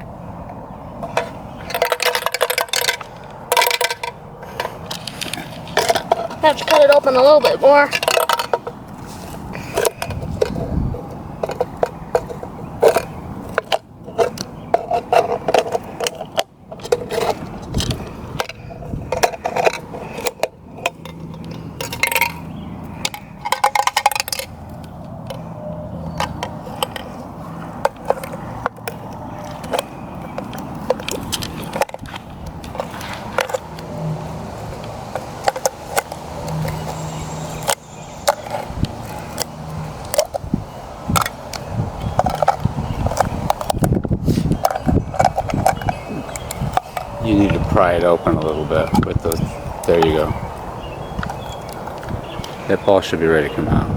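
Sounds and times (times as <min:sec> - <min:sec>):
metal can scraping: 0:01.0 - 0:22.4.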